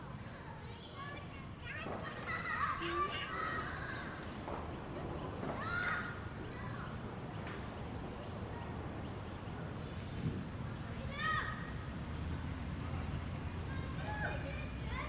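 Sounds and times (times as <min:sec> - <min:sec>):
distant children shouting: 0:00.0 - 0:04.4, 0:05.4 - 0:07.0, 0:10.8 - 0:15.0.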